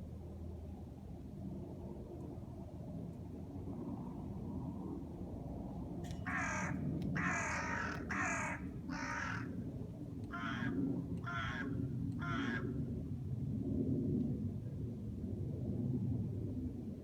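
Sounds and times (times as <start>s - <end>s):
crow cawing: 6.2s - 9.6s, 10.3s - 12.8s.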